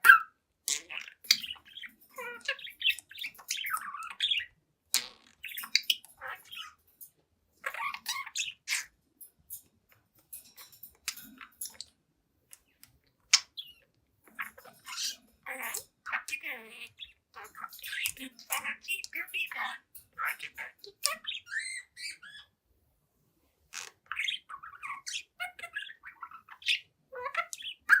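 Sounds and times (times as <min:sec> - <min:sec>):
budgerigar chattering and warbling: 0:00.0 - 0:06.8, 0:07.6 - 0:09.0, 0:13.3 - 0:22.5, 0:23.8 - 0:28.0.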